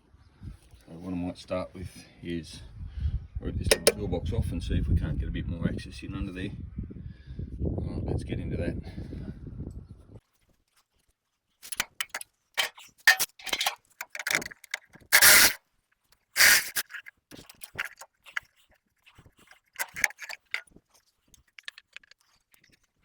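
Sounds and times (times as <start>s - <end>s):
metal scraping: 3.7s - 4.3s, 11.7s - 15.6s, 16.4s - 17.0s, 19.8s - 20.6s
metal clinks and rattles: 11.6s - 15.6s, 19.8s - 20.6s.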